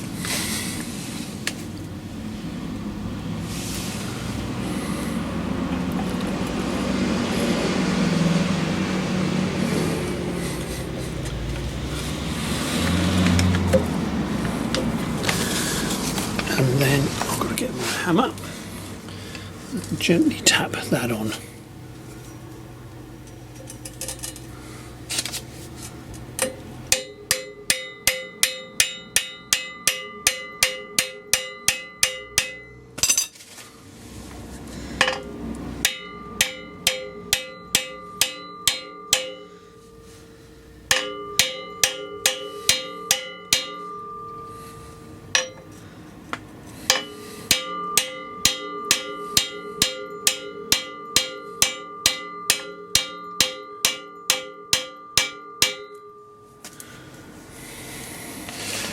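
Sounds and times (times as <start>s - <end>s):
hammer tapping on metal: 26.4s - 33.3s, 35.0s - 45.8s, 46.4s - 56.8s.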